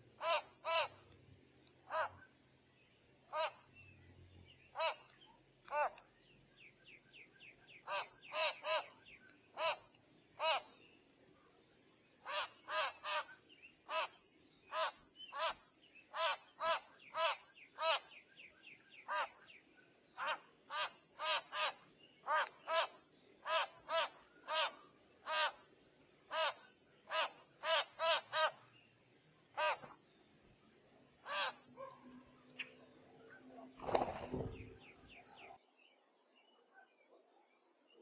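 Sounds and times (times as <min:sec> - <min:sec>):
bird cawing: 0:33.8 - 0:34.9.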